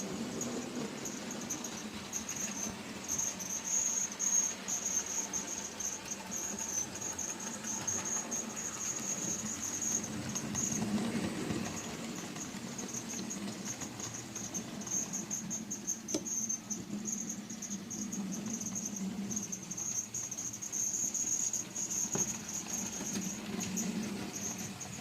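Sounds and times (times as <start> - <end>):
model train wheels rumbling: 0.0 - 25.0.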